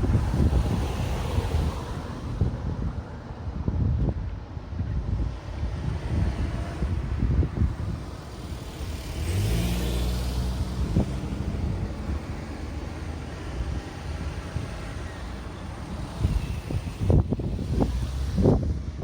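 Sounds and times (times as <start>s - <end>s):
wind noise on microphone: 0.0s - 19.0s
car engine accelerating: 5.5s - 19.0s.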